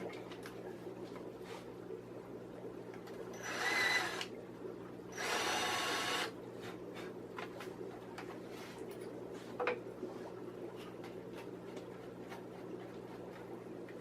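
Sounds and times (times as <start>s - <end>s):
power drill drilling: 3.4s - 4.3s, 5.2s - 6.4s.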